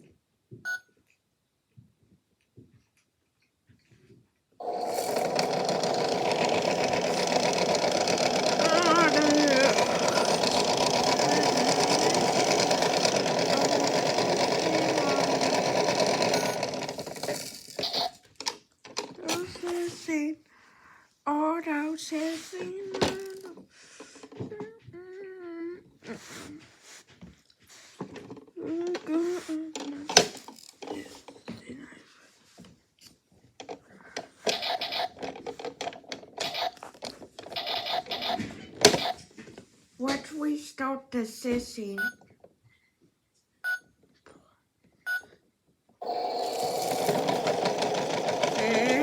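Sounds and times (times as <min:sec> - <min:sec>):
washing machine rattling: 0:04.6 - 0:18.0, 0:46.5 - 0:49.0.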